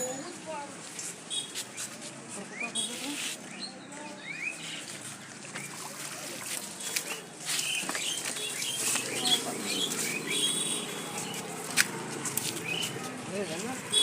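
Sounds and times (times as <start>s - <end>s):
small birds chirping: 1.3s - 11.5s, 12.6s - 13.0s.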